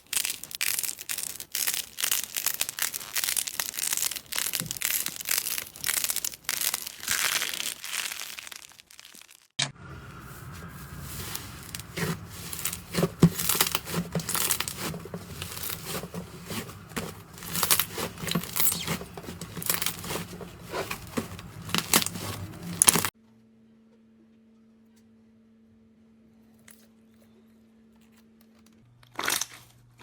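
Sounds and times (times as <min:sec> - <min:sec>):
slime crackling and popping: 0:00.0 - 0:09.6, 0:10.4 - 0:23.1.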